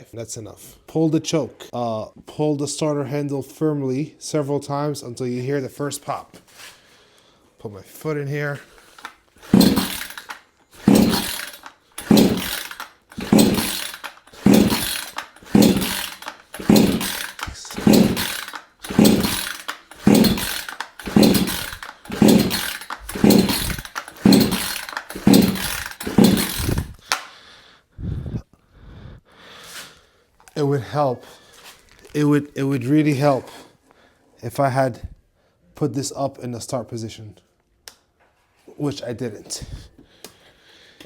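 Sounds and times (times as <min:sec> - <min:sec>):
chainsaw recoil starter pulled: 0:08.6 - 0:27.3
engine turning over without firing: 0:08.8 - 0:27.3.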